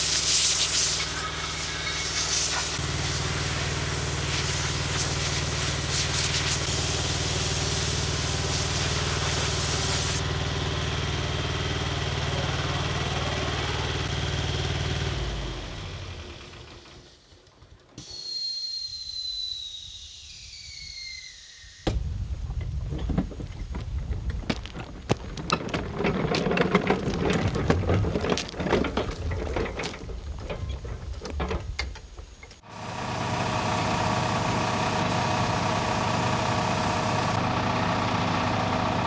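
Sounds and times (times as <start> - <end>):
air compressor engine running: 0.0 - 17.1, 32.6 - 39.0
high falling whistles: 18.0 - 22.0
blast gun hissing: 32.7 - 37.4.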